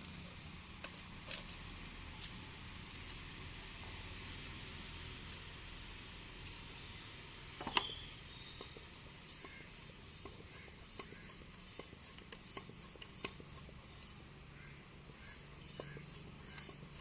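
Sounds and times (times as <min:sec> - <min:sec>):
air pump hissing: 0:06.5 - 0:14.3, 0:15.1 - 0:17.0.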